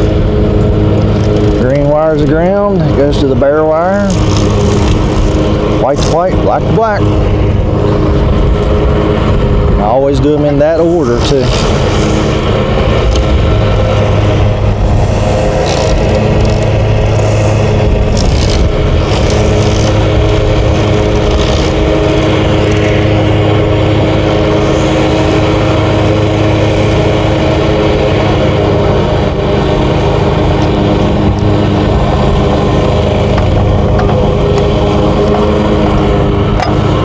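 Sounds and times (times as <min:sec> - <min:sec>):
lawn mower engine running: 0:00.0 - 0:37.0.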